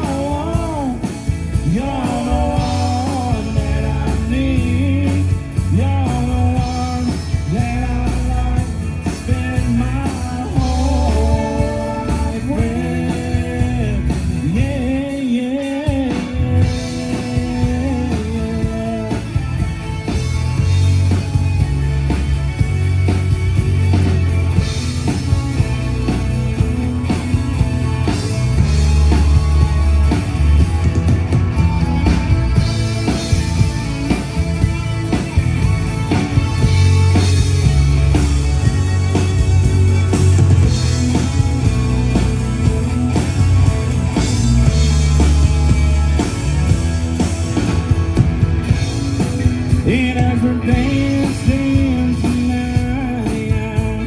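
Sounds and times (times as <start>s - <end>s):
drum kit: 0.0s - 54.0s
electric guitar: 0.0s - 54.0s
heavy bass line: 0.0s - 54.0s.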